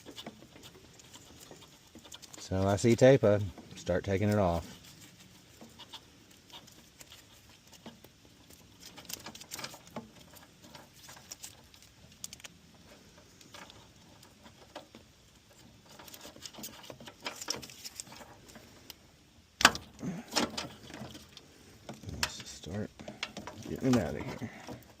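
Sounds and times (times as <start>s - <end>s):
tape peeling crackles: 0.0s - 19.0s.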